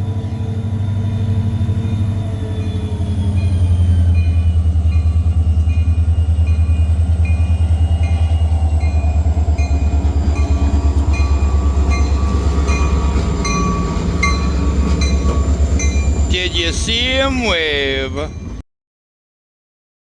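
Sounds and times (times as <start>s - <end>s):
diesel locomotive engine rumbling: 0.0s - 18.6s
locomotive whine: 0.0s - 18.6s
bell ringing: 8.8s - 18.6s.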